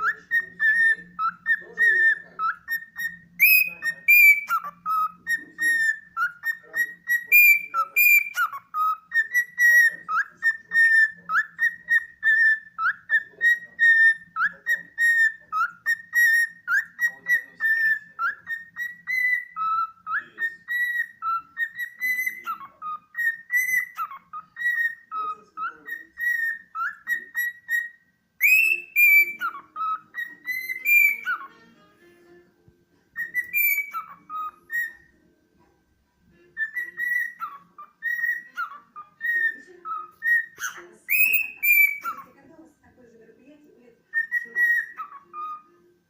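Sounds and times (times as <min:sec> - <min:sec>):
cockatiel whistling: 0:00.0 - 0:32.4, 0:33.2 - 0:35.2, 0:36.3 - 0:42.3, 0:44.1 - 0:45.9.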